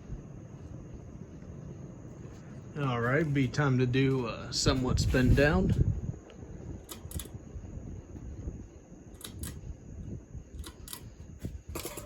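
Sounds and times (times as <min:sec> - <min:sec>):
ceiling fan motor rumble: 0:00.0 - 0:12.0.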